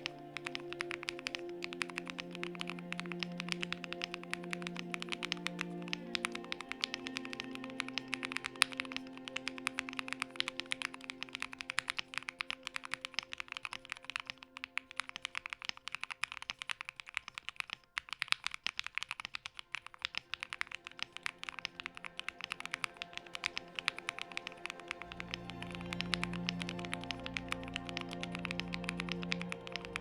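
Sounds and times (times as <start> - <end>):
background music: 0.0 - 30.0
fast typing on mechanical keyboard: 0.0 - 30.0.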